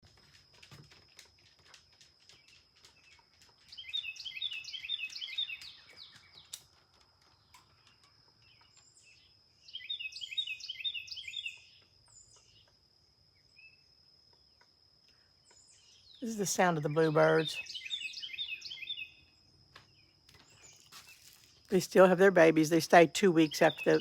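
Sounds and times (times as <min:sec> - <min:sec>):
bluebirds chattering calls: 0:03.7 - 0:06.6, 0:15.5 - 0:19.1, 0:20.4 - 0:24.0
faint high-pitched tone: 0:16.2 - 0:17.6
faint bird chips: 0:19.9 - 0:21.8.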